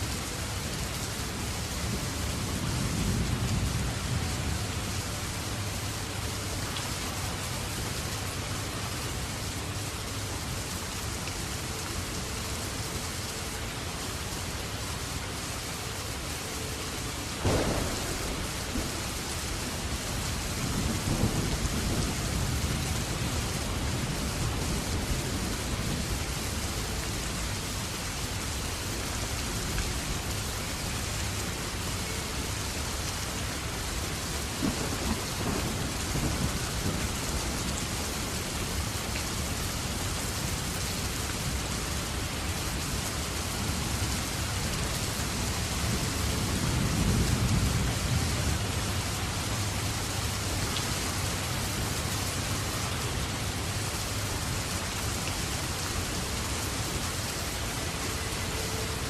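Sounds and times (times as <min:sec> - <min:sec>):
steady rain falling: 0:00.0 - 0:59.0
low rumbles of thunder: 0:17.4 - 0:26.4, 0:34.4 - 0:40.6, 0:43.4 - 0:50.0.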